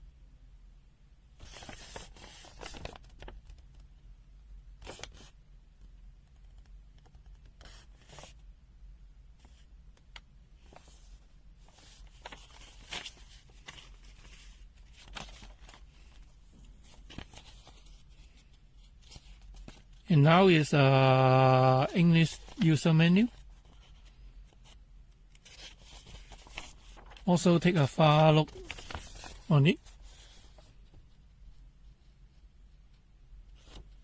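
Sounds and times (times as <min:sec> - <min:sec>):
paper pages rustling: 0:01.4 - 0:03.8, 0:10.6 - 0:31.6, 0:33.4 - 0:34.0.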